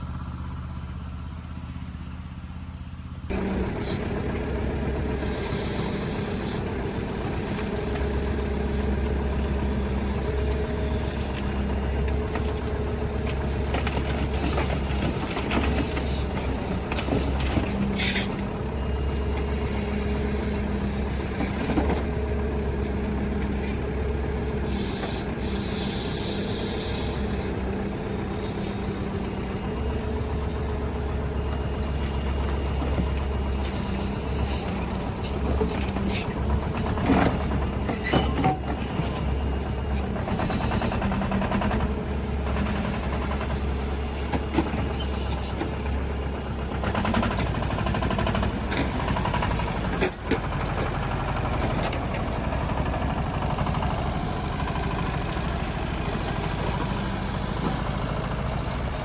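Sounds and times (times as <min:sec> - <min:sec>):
heavy diesel machinery running: 0:00.0 - 0:59.0
metal clanks and scrapes: 0:37.0 - 0:39.0.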